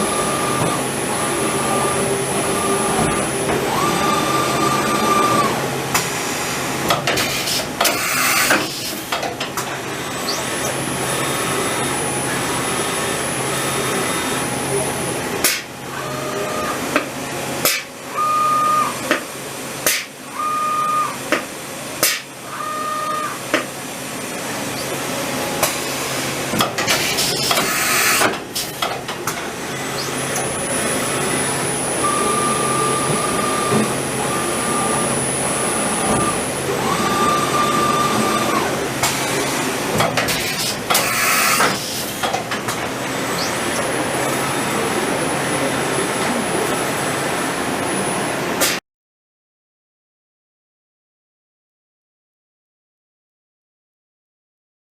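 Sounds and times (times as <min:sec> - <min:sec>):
high whining tones: 0:29.6 - 0:38.8.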